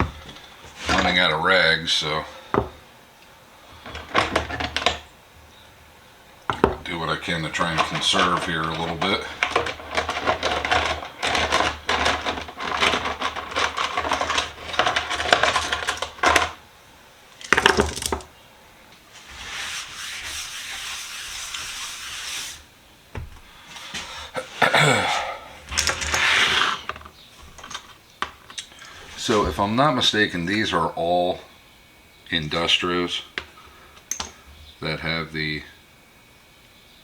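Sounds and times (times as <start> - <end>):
metal sockets clinking and scraping: 6.9 - 16.6, 25.5 - 29.6, 34.0 - 34.4
rag rubbing hiss: 19.1 - 22.7, 23.6 - 26.9.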